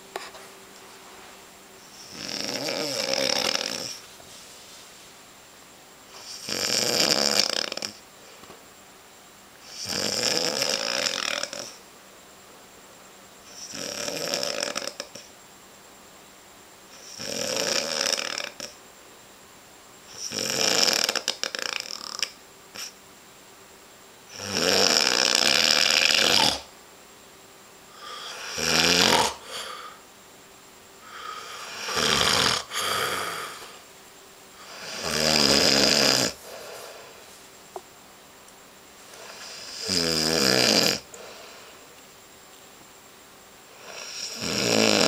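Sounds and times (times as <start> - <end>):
person snoring: 1.8 - 4.0, 6.2 - 8.0, 9.6 - 11.8, 13.5 - 15.2, 17.0 - 18.7, 20.1 - 23.0, 24.3 - 26.7, 27.9 - 30.0, 31.0 - 33.8, 34.6 - 37.2, 39.1 - 41.8, 43.8 - 45.0.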